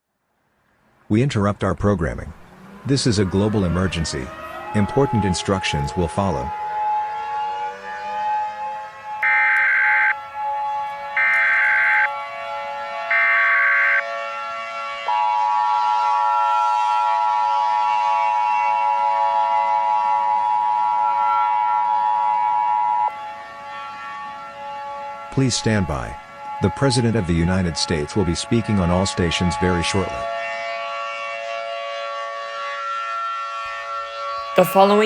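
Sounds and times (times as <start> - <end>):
siren: 2.1 - 35.0.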